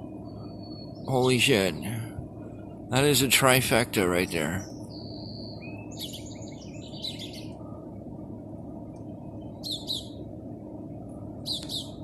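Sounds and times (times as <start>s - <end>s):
songbird chirping: 0.0s - 10.4s, 11.0s - 12.0s
low background noise: 0.0s - 12.0s.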